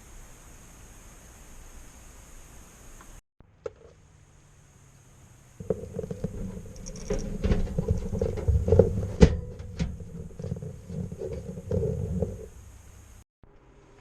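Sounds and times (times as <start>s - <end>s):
hands knocking and scraping hardware: 5.6s - 12.6s.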